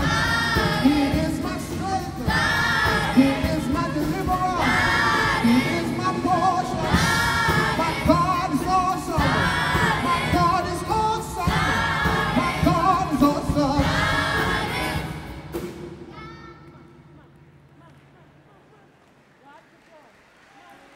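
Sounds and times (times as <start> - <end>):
children's choir singing: 0.0 - 15.8.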